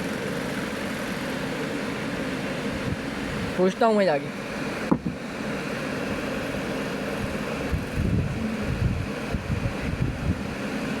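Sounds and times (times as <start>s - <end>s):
wind buffeting microphone: 7.2s - 10.5s.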